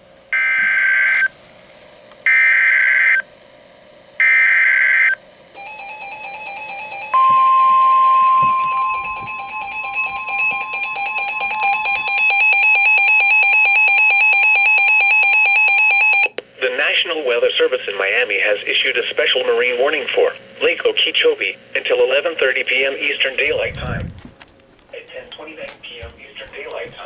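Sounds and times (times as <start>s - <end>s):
steady warning alarm tone: 0.3s - 1.3s, 2.3s - 3.3s, 4.2s - 16.4s
rapidly pulsing alarm beep: 4.2s - 16.3s.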